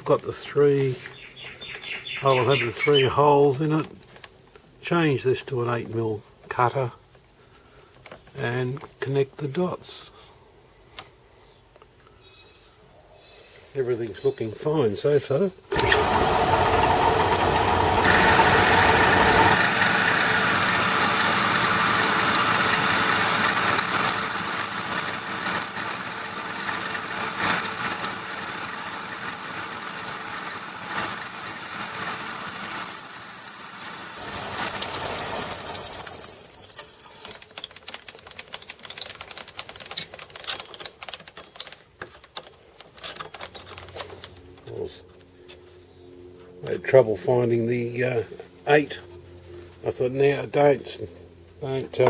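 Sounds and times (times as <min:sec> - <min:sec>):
metalworking machine cutting metal: 0:32.8 - 0:37.3
scattered clicks and knocks: 0:32.9 - 0:44.7.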